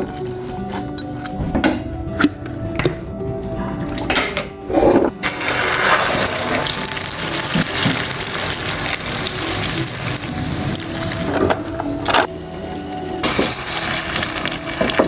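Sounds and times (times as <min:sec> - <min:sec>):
noodles sizzling in hot oil: 0:05.2 - 0:11.3, 0:12.0 - 0:15.0.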